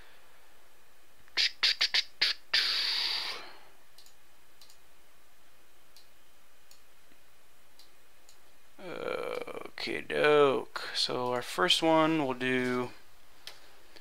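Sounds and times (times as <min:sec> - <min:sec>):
sharp clicks: 0:04.0 - 0:04.8.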